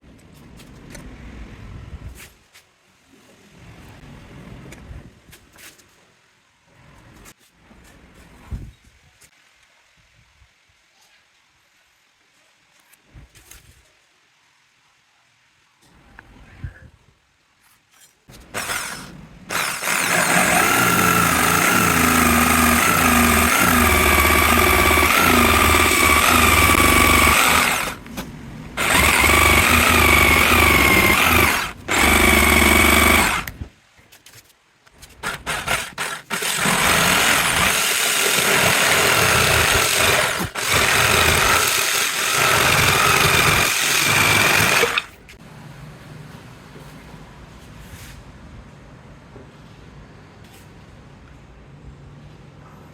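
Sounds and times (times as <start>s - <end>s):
electric power tool motor running: 18.5s - 28.0s, 28.8s - 33.6s, 35.3s - 45.1s.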